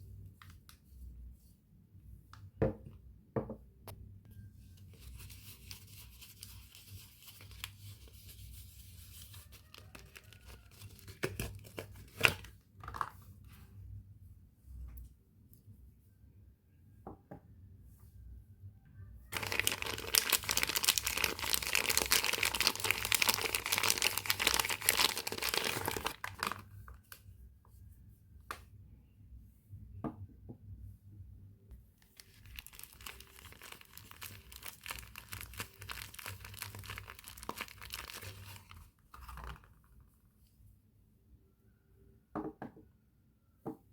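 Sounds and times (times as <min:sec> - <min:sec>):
wrapper tearing and crinkling: 0:09.2 - 0:12.5, 0:19.3 - 0:26.7, 0:32.0 - 0:39.8.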